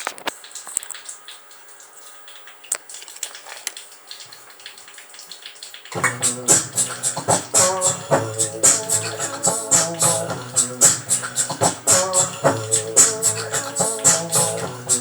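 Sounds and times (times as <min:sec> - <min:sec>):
music with bass and percussion: 0:06.0 - 0:15.0.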